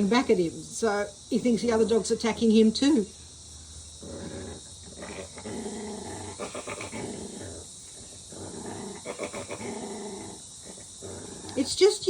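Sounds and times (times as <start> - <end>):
puppy growling: 4.0 - 12.0.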